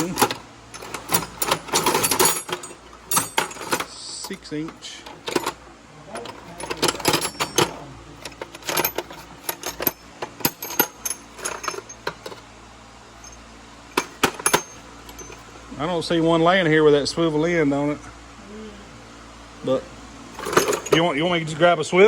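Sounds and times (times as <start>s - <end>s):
metallic ring: 0.0s - 4.4s, 6.2s - 12.4s, 13.2s - 15.4s, 20.4s - 21.1s
metal tools clinking in a drawer: 0.0s - 12.4s, 13.2s - 15.5s, 20.4s - 21.2s.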